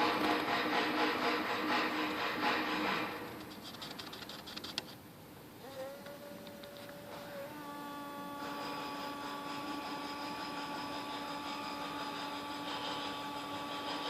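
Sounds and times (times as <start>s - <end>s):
hoverfly wings buzzing: 5.6s - 11.3s.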